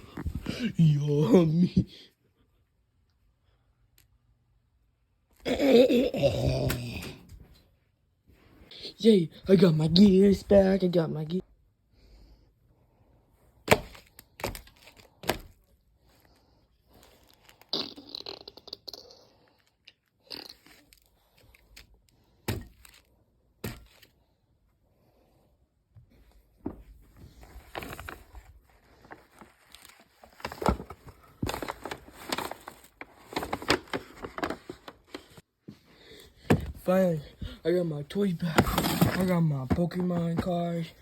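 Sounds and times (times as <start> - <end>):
toys knocking and thumping: 36.4 - 36.8.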